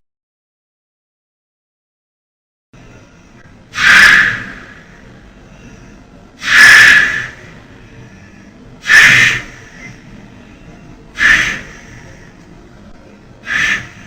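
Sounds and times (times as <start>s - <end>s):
faint breathing: 2.8s - 14.0s
person snoring: 11.2s - 12.3s, 13.4s - 14.0s.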